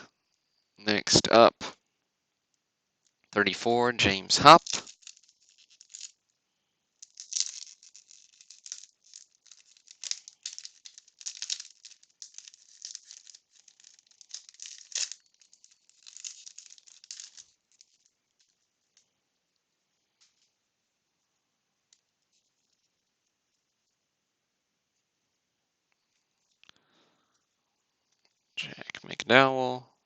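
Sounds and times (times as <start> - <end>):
wax wrapper crinkling: 4.4 - 20.6.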